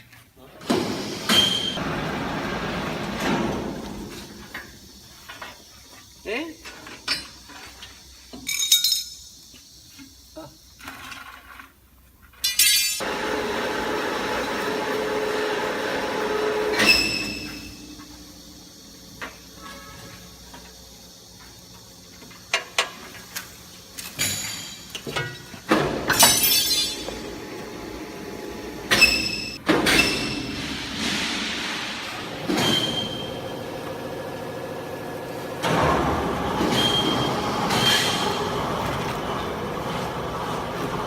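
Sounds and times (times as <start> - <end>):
sliding rattle of baler doors: 0.6 - 5.5, 13.0 - 18.4, 22.8 - 41.0
hydraulic power unit running: 0.6 - 5.9, 13.0 - 41.0.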